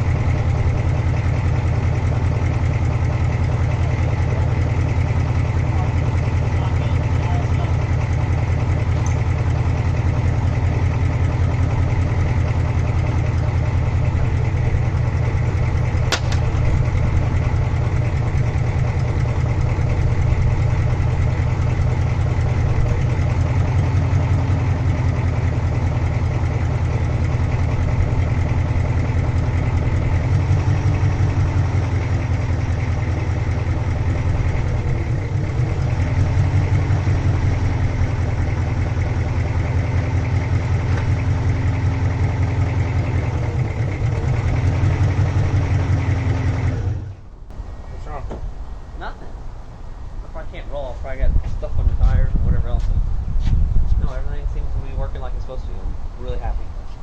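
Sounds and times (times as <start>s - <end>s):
diesel engine idling: 0.0s - 57.0s
sharp click: 16.1s - 16.5s.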